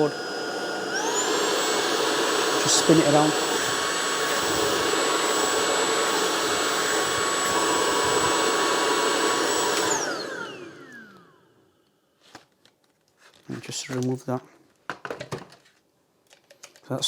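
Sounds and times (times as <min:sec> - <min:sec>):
vacuum motor spinning down: 0:00.0 - 0:11.8
cordless vacuum whining: 0:00.0 - 0:12.4.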